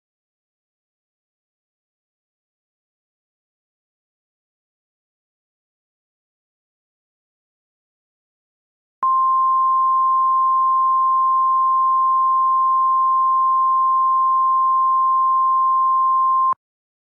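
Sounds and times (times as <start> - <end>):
steady electronic test tone: 9.0 - 16.6.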